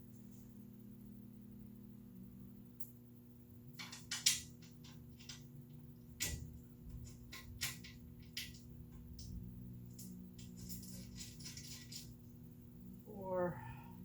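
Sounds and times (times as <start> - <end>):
bolts and washers clinking: 3.8 - 12.2.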